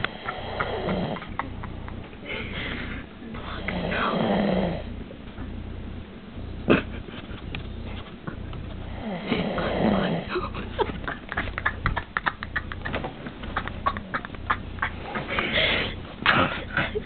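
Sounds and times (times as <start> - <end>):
rattling snore: 0.0 - 1.3, 3.6 - 5.0, 8.8 - 10.3.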